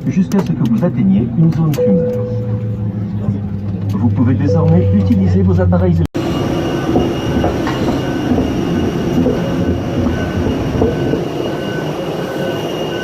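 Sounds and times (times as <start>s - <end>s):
vehicle interior rumble and rattle: 0.0s - 6.1s
short higher tones: 1.8s - 5.9s.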